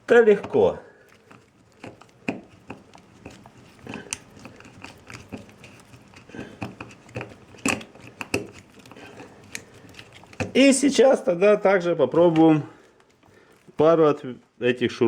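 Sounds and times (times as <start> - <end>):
screwdriver bit clicking and scraping: 1.1 - 10.7.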